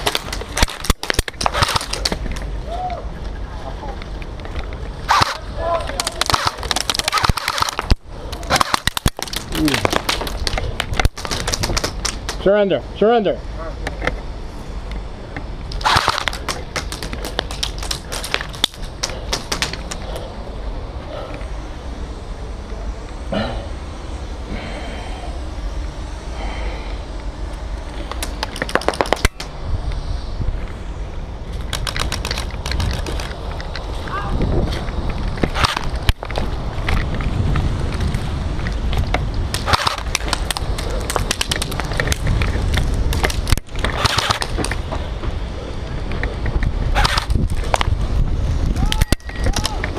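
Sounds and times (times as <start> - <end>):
airsoft guns firing: 0.0 - 2.2, 5.1 - 5.4, 6.0 - 10.4, 11.0 - 12.4, 15.8 - 20.0, 28.5 - 29.5, 39.6 - 41.8, 43.3 - 44.8, 47.0 - 47.3
steady low rumble: 0.0 - 49.9.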